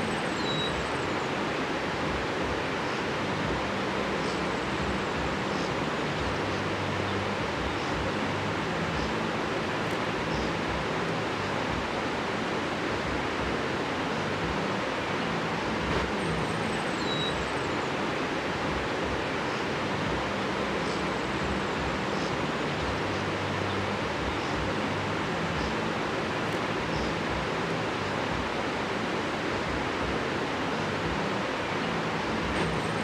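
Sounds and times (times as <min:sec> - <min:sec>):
faint bird chirps: 0:00.0 - 0:01.9, 0:16.0 - 0:18.1
rushing running water: 0:00.0 - 0:33.0.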